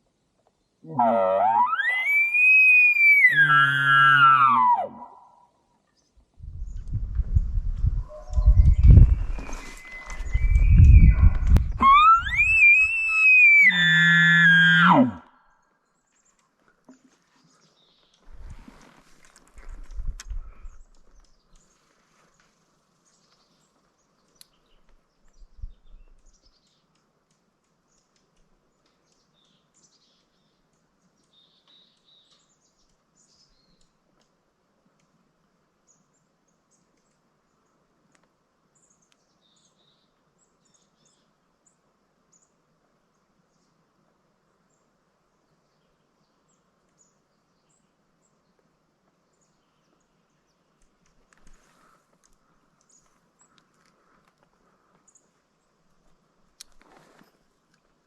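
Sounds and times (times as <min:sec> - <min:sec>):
small birds chirping: 0:15.8 - 0:34.4, 0:44.6 - 0:57.8.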